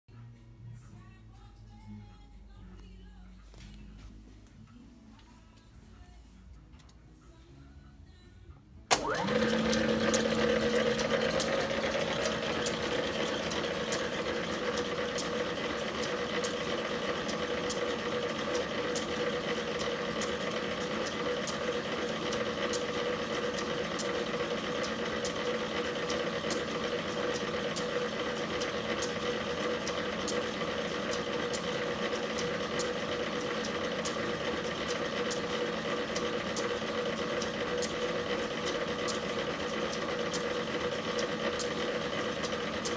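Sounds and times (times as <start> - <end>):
electric motor humming and whining: 9.0 - 36.8.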